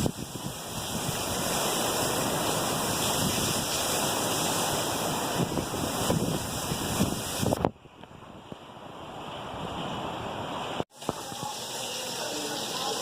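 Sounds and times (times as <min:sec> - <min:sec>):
wind buffeting microphone: 0:00.0 - 0:04.2, 0:04.8 - 0:10.8
strong wind: 0:00.0 - 0:10.8
heavy rain: 0:00.0 - 0:13.0.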